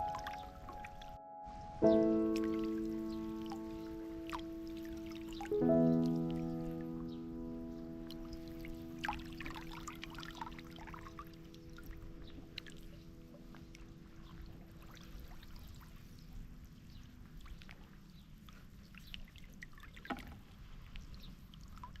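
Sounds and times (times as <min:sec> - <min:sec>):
held musical chord: 0:00.0 - 0:12.2.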